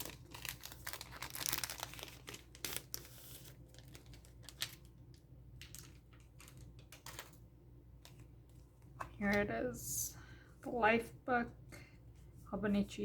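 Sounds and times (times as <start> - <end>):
packaging crinkling and rustling: 0.0 - 7.4.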